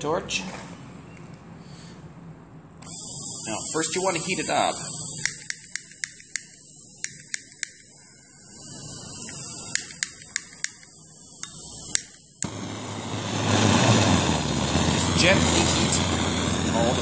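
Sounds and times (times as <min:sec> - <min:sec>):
blowtorch igniter clicking: 0:02.8 - 0:08.0, 0:08.6 - 0:12.7
rushing hiss of flame: 0:02.9 - 0:05.4, 0:11.2 - 0:17.0.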